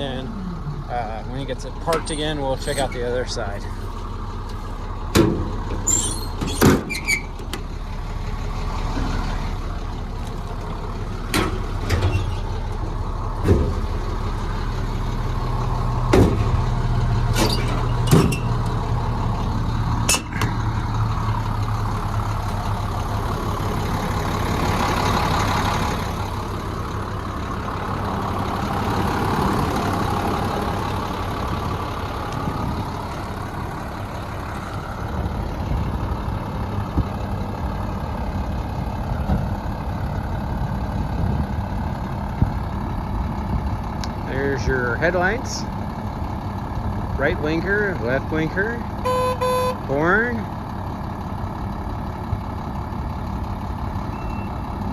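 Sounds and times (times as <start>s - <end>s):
engine idling: 0.0s - 54.9s
metal toolbox doors clunking: 1.8s - 7.6s, 10.2s - 20.6s.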